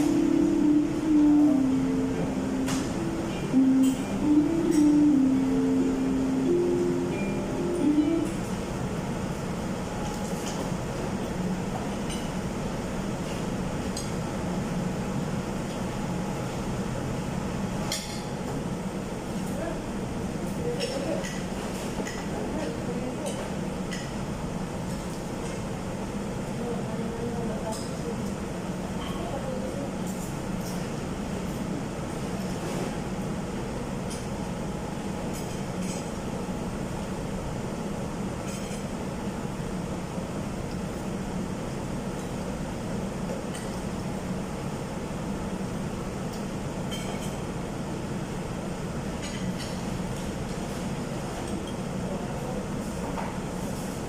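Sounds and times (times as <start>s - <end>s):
low air conditioning hum: 0.0s - 54.0s
tableware clinking: 1.9s - 5.8s.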